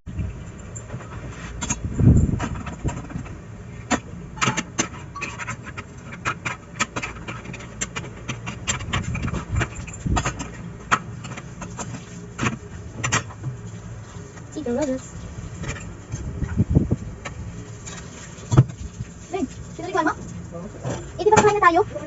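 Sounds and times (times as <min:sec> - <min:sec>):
low steady hum: 0:00.1 - 0:22.0
tableware clinking: 0:04.4 - 0:05.7.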